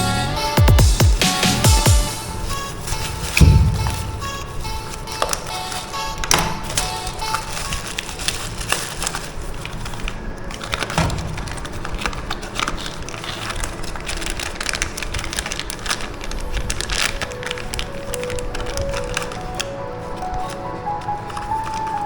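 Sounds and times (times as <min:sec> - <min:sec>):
packaging crinkling: 0:02.2 - 0:22.0.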